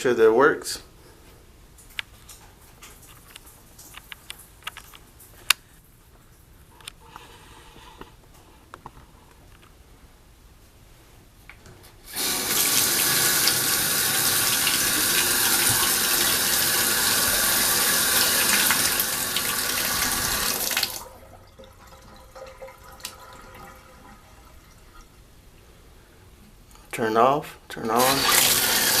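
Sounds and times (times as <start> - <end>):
water running from shower valve: 12.1 - 25.2, 27.9 - 29.0.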